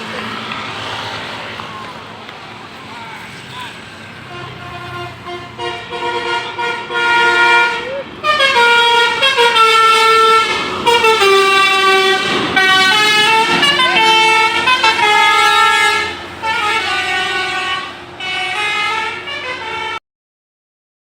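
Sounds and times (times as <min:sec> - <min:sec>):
musical air horn playing a tune: 0:04.3 - 0:20.0.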